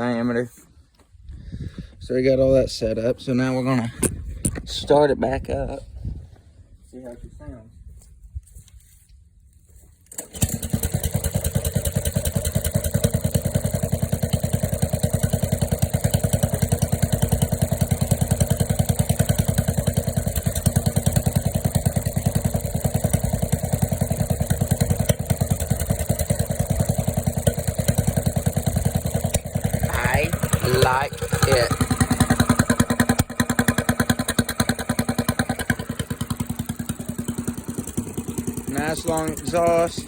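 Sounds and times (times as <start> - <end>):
diesel engine starting and idling: 10.1 - 40.0.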